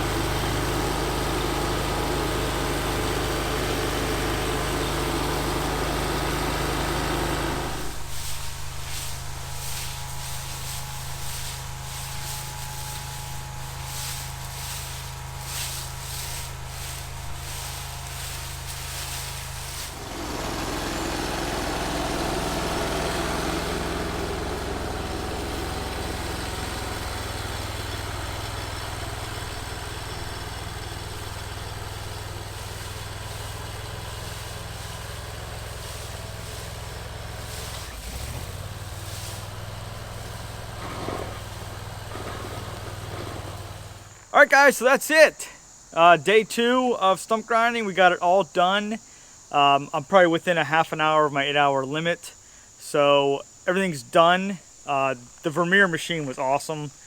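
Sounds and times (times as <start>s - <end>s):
stump grinder engine: 0.0s - 44.3s
cutter wheel grinding stump: 0.0s - 44.4s.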